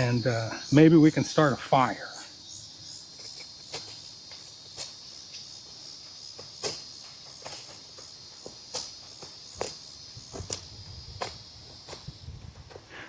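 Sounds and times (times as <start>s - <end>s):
insects chirring: 0.0s - 13.0s
knife scraping wood: 3.0s - 12.1s.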